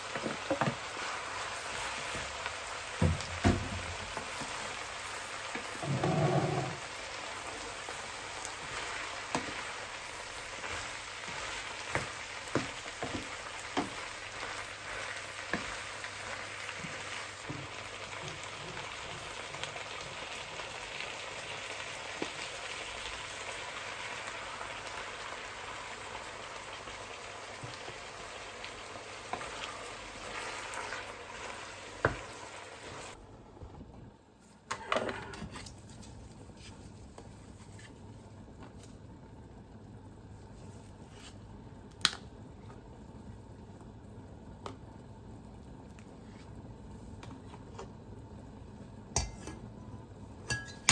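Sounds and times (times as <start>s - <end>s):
food sizzling in a frying pan: 0.0s - 33.2s.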